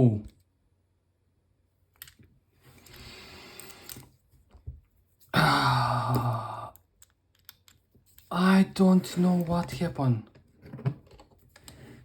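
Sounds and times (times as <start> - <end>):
man groaning: 5.3 - 6.8
man sighing: 5.3 - 6.8.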